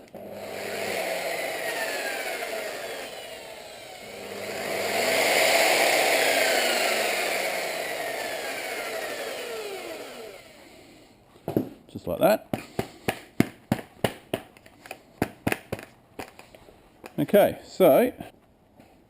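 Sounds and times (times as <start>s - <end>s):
electric polisher motor whine: 0.0s - 11.0s.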